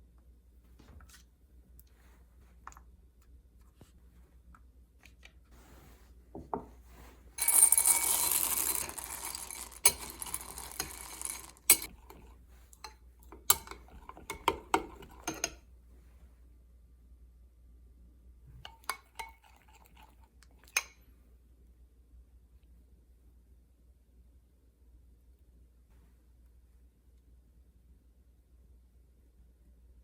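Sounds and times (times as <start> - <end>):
utensils clinking against dishes: 7.4 - 12.3, 13.4 - 15.6.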